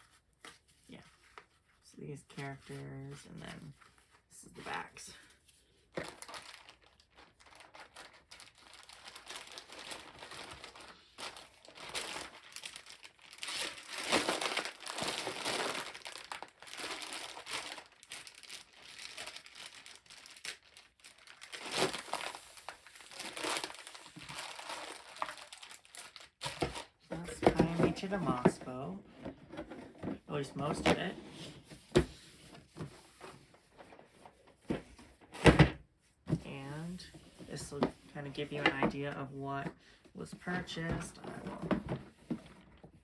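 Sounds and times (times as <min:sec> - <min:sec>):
packaging crinkling and rustling: 0:05.9 - 0:35.7.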